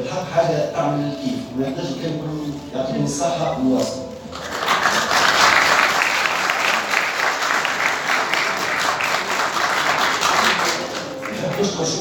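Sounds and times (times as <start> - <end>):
audience applauding: 4.3 - 12.0.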